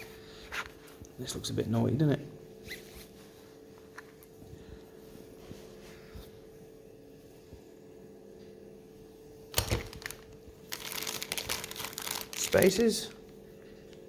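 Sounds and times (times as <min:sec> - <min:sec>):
faint steady hum: 0:00.0 - 0:14.0
packaging crinkling: 0:09.5 - 0:14.0.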